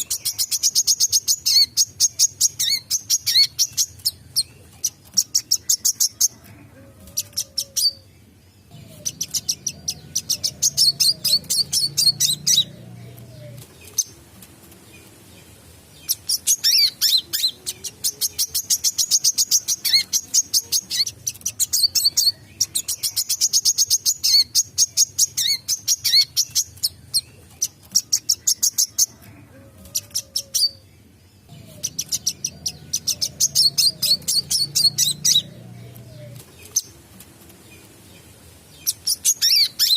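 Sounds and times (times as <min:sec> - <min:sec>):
sunbird singing rapid chirps: 0:00.0 - 0:06.4, 0:07.2 - 0:29.2, 0:30.0 - 0:37.0, 0:37.6 - 0:39.9.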